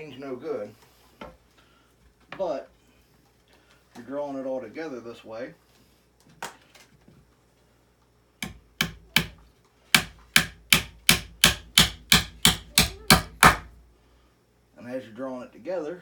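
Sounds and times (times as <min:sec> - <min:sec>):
hammer striking nail into wood: 0:08.4 - 0:09.4, 0:10.0 - 0:13.8.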